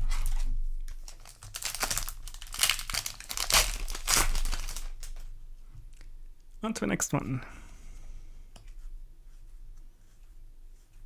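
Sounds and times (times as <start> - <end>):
foil wrapper crinkling and tearing: 0.0 - 5.3.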